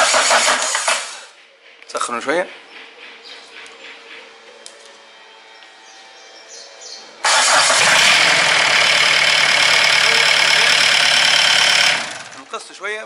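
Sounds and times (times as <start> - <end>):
diesel engine starting and running: 0.0 - 1.4, 7.2 - 12.6.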